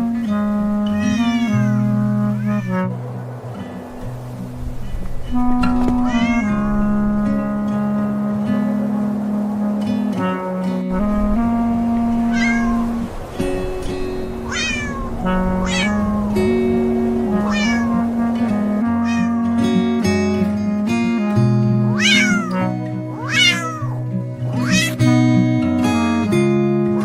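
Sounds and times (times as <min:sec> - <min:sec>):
background music: 0:00.0 - 0:27.0
cat meowing: 0:00.8 - 0:02.9, 0:05.6 - 0:06.9, 0:12.2 - 0:13.1, 0:14.4 - 0:16.2, 0:17.3 - 0:18.1, 0:18.9 - 0:19.5, 0:21.9 - 0:25.1.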